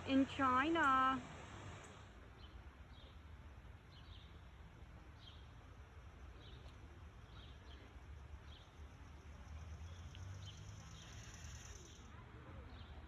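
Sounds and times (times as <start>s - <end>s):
small bird chirping: 9.8s - 12.1s.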